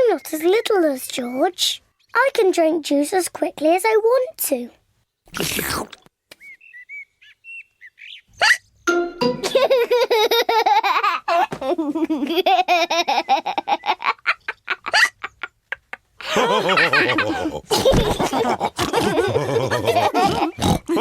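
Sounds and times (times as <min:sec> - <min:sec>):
cartoon voices laughing: 0:09.4 - 0:15.5, 0:16.2 - 0:21.0.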